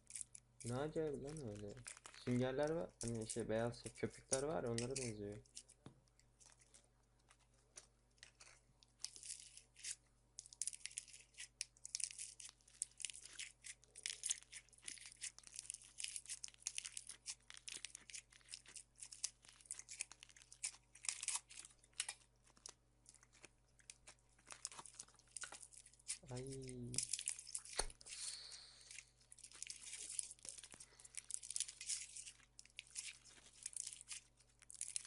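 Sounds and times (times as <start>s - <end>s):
slime crackling when squeezed: 0.0s - 5.7s.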